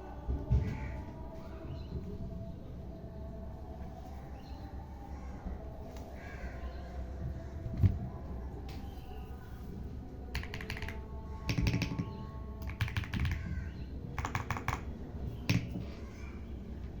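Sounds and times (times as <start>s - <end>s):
mechanical keyboard typing: 10.3s - 13.5s, 14.2s - 14.9s.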